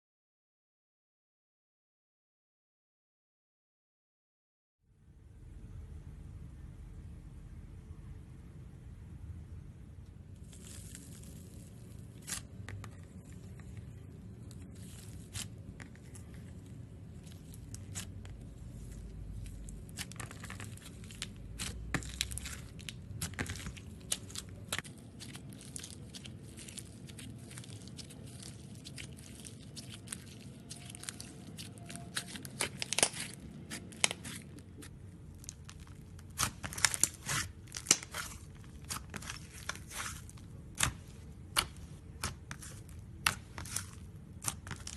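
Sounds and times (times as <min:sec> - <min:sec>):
foam slime crackling and popping: 0:10.4 - 0:44.9.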